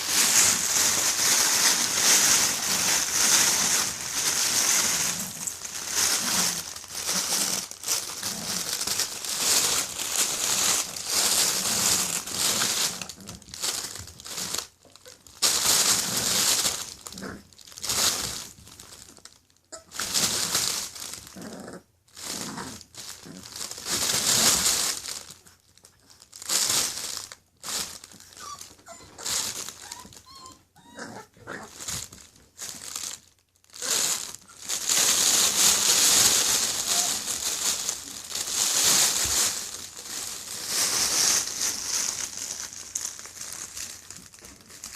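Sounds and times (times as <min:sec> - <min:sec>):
crinkling and rustling: 0:00.0 - 0:44.9
puppy squeaks: 0:28.3 - 0:31.3.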